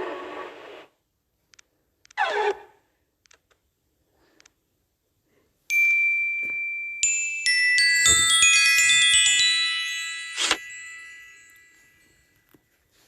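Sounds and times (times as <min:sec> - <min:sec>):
bell-like chime notes: 0:05.7 - 0:12.8.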